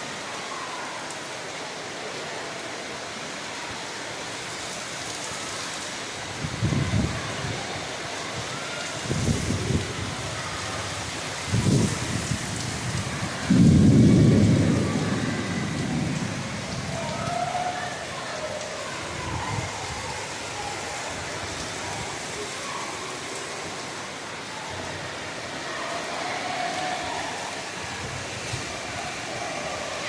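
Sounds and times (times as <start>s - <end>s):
steady rainfall: 0.0s - 30.0s
low rumbling surges: 9.1s - 22.8s.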